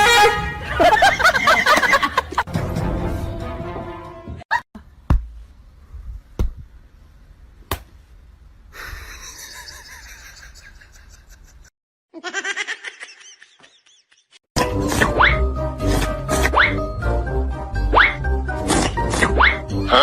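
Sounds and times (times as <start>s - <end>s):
person laughing: 0.7s - 2.5s, 8.8s - 14.4s.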